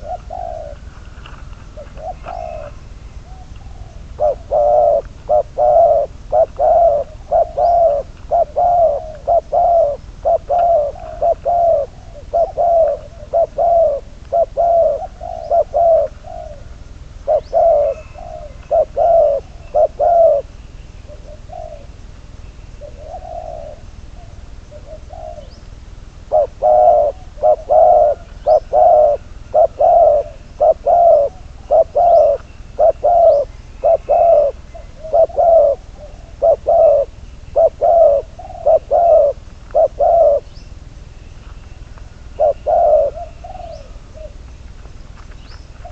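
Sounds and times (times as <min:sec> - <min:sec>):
dove cooing: 0:00.0 - 0:45.9
small birds chirping: 0:00.0 - 0:45.9.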